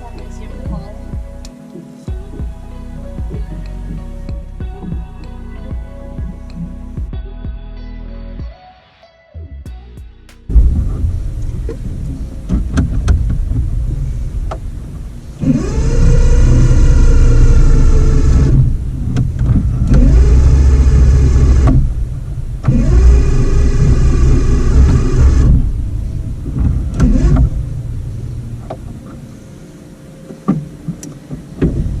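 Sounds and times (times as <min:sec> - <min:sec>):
boat engine starter cranking: 0:10.5 - 0:29.2.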